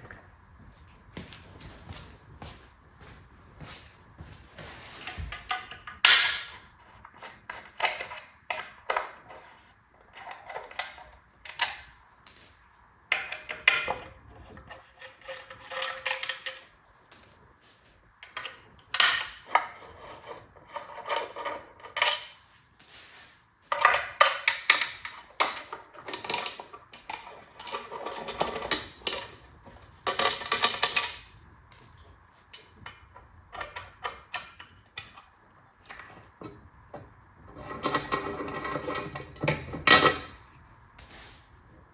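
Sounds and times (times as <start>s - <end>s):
metal tools and parts clanking: 23.7s - 35.3s, 37.6s - 41.1s.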